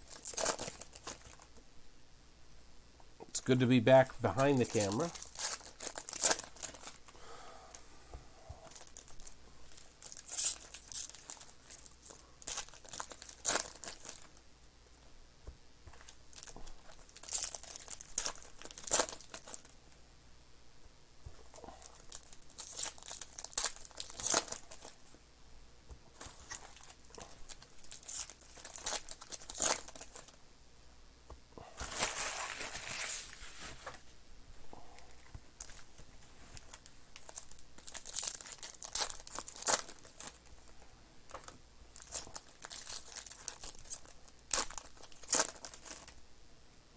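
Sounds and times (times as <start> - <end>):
plastic wrappers crinkling and tearing: 0.0 - 1.6, 4.3 - 7.1, 8.6 - 14.4, 15.9 - 19.8, 21.8 - 25.0, 26.2 - 30.4, 31.8 - 34.0, 35.0 - 46.2.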